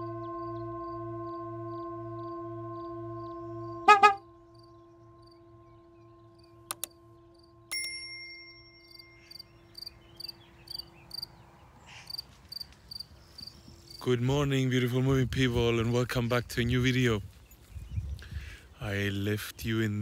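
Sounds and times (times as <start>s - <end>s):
crickets chirping: 0.4s - 7.7s, 8.5s - 14.0s
bright ding: 7.7s - 9.3s.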